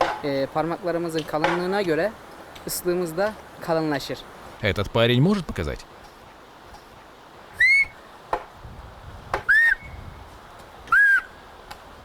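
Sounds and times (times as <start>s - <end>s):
man whistling through fingers: 7.6s - 8.0s, 9.5s - 10.0s, 10.9s - 11.3s.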